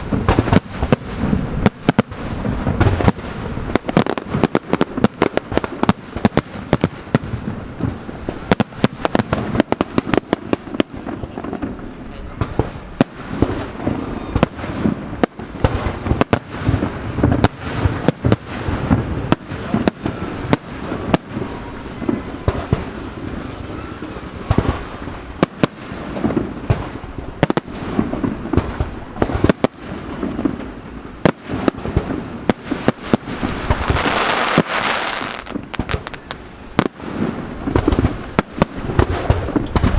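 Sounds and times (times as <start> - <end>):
hissing crackle: 0.0 - 39.9
firework shells bursting: 12.4 - 39.9.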